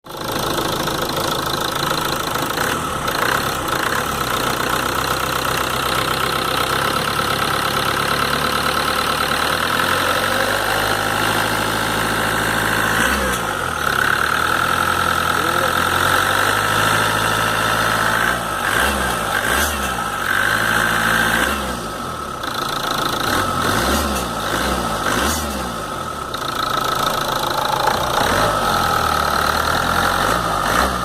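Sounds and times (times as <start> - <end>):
diesel engine running: 0.1 - 31.0
steady high whine: 26.8 - 29.6.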